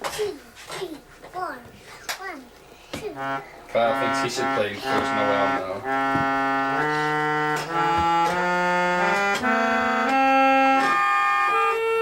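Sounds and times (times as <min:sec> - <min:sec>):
electronic keyboard organ tune: 0:03.2 - 0:12.0.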